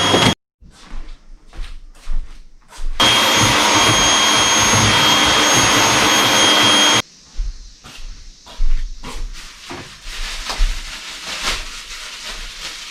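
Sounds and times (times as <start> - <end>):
vacuum cleaner whining: 0.0 - 0.4, 3.0 - 10.0.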